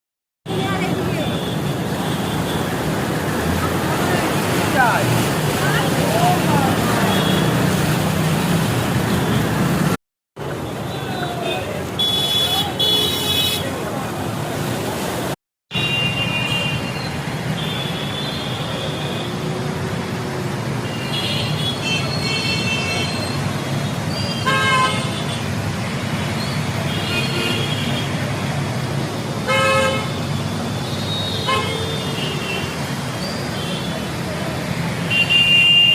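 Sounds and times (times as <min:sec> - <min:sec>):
road traffic: 0:00.4 - 0:35.9
rain: 0:00.5 - 0:12.9
vehicle horns honking: 0:11.5 - 0:13.7, 0:24.3 - 0:25.4, 0:29.5 - 0:32.8, 0:35.1 - 0:35.9.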